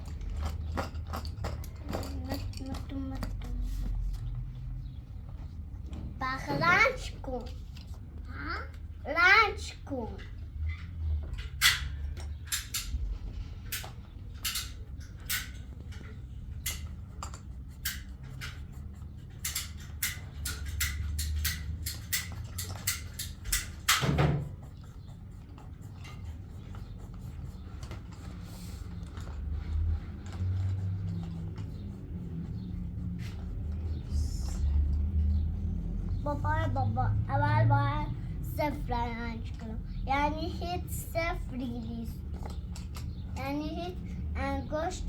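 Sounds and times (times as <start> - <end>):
low steady rumble: 24.4 - 45.0.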